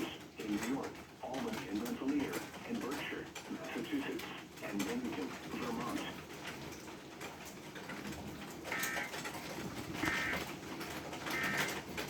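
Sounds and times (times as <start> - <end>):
digital data tone squawks: 10.0 - 10.4, 11.3 - 11.8.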